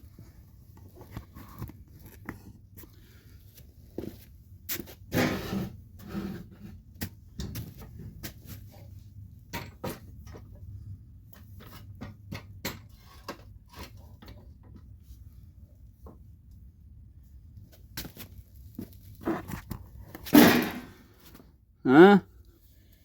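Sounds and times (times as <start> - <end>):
loud clunk: 20.3 - 21.0.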